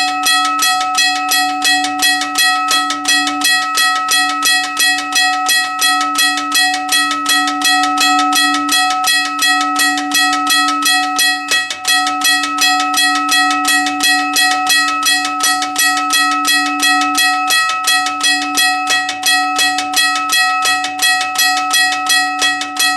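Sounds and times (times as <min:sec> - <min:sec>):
railroad crossing bell ringing: 0:00.0 - 0:22.9.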